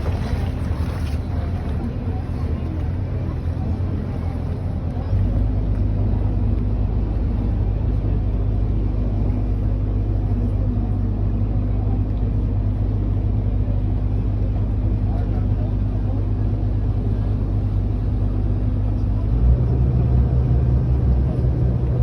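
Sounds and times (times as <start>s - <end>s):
boat engine humming: 0.0s - 22.0s.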